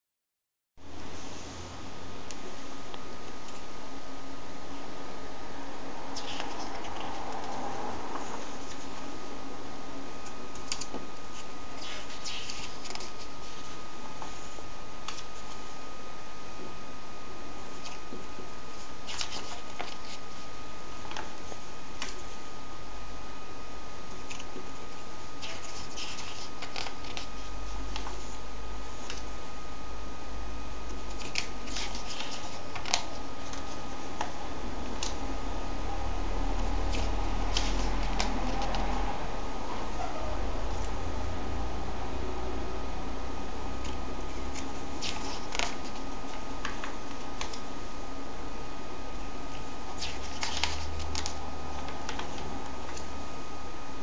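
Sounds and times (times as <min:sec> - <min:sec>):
background hiss and hum: 0:00.8 - 0:54.0
faint constant tone: 0:00.8 - 0:54.0
paper and plastic rustling: 0:18.8 - 0:20.5, 0:25.4 - 0:28.4, 0:30.9 - 0:33.9, 0:44.5 - 0:47.6, 0:49.9 - 0:53.1.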